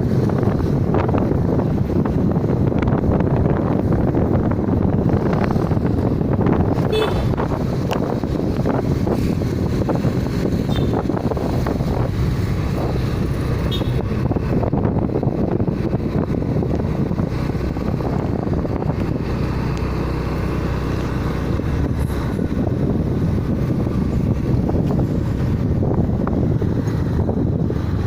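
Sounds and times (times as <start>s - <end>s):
vehicle running noise: 0.0s - 28.0s
wind rushing over microphone: 0.0s - 28.0s.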